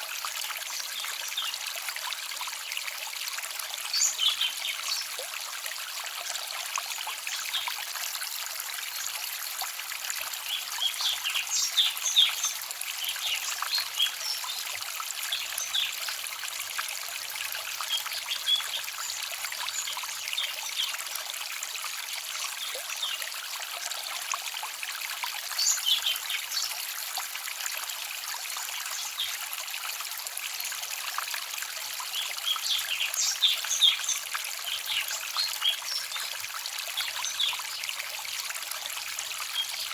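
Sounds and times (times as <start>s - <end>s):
forest stream babbling: 0.0s - 39.9s
songbirds chirping: 32.1s - 36.4s.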